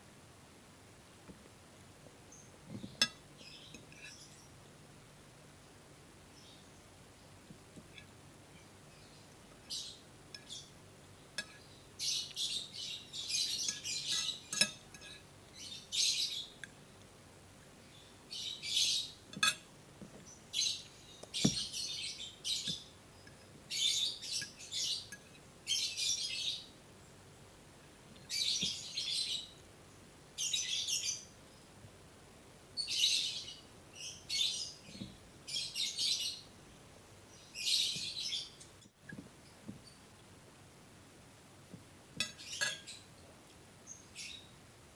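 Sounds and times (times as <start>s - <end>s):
spoon clicking against plate: 19.3s - 19.6s.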